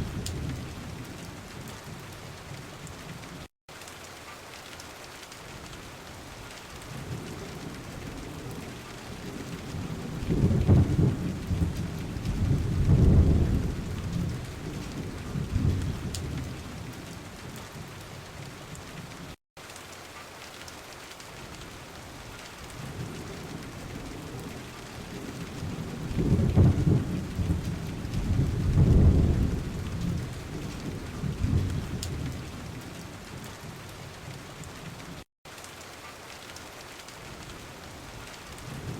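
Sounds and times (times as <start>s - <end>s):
low rolling thunder: 0.0s - 2.0s, 6.8s - 17.9s, 22.7s - 34.4s
steady rain: 0.0s - 38.9s.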